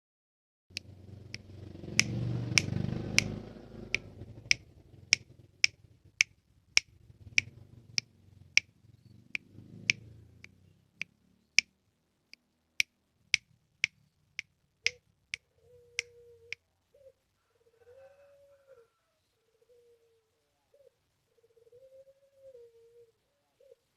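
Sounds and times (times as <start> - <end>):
sharp even clicks: 0.7 - 8.7
dove cooing: 15.4 - 23.9.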